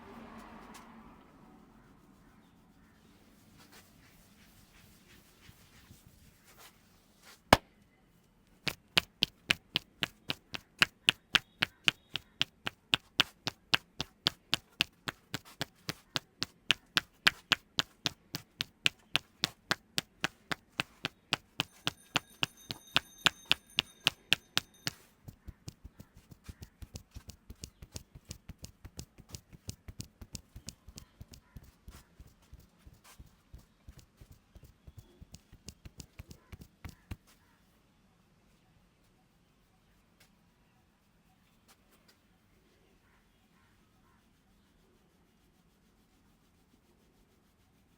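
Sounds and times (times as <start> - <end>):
hands slapping on head: 8.6 - 37.3.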